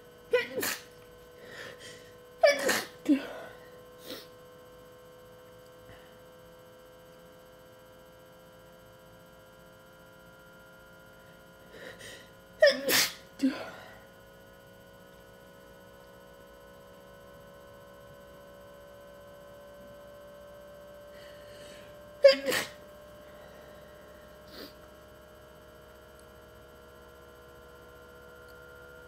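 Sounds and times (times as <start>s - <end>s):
faint steady hum: 0.0s - 29.0s
person sneezing: 0.3s - 0.9s, 1.5s - 4.3s, 11.8s - 14.0s, 21.7s - 22.8s, 24.5s - 24.8s.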